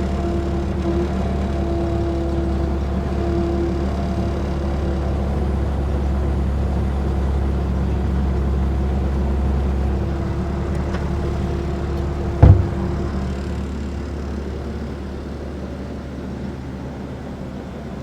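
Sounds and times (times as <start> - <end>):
low mechanical hum: 12.4 - 13.1.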